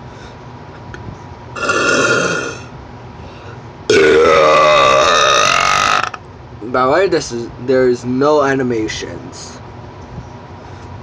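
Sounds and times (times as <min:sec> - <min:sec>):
person burping: 0:01.6 - 0:02.7, 0:03.9 - 0:06.2.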